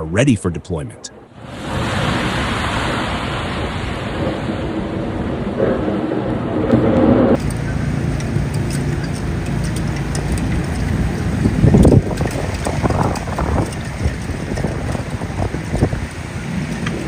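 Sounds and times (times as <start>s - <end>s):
wind noise: 0.0s - 17.0s
motor vehicle running: 5.6s - 17.0s.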